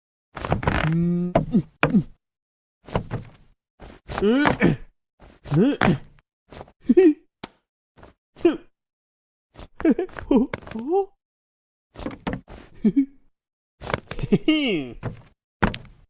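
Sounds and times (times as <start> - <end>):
sharp knocks and thuds: 2.9 - 3.4, 15.0 - 16.0
cartoon voices crying and grunting: 4.1 - 4.9, 5.5 - 6.1, 8.4 - 8.7, 9.8 - 11.2, 14.3 - 15.0.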